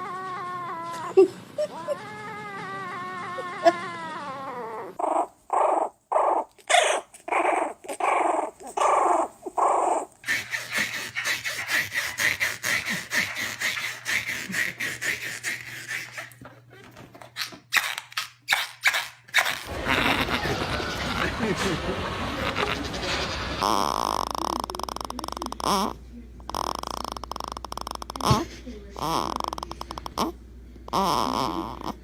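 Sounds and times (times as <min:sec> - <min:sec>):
dog making strange calls: 0:00.0 - 0:16.5, 0:18.8 - 0:21.4.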